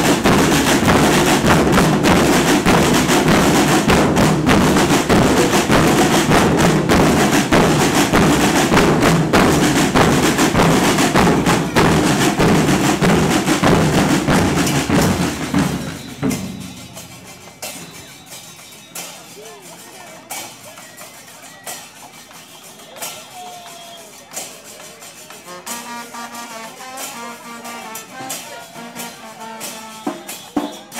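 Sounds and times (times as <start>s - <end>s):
percussion group drumming: 0.0s - 30.9s.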